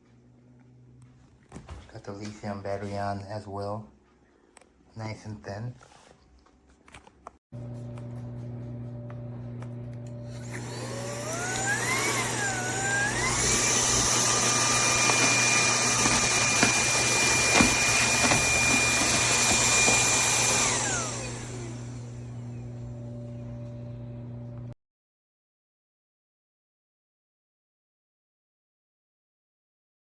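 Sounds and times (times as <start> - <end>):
stick vacuum motor whine: 7.6 - 24.7.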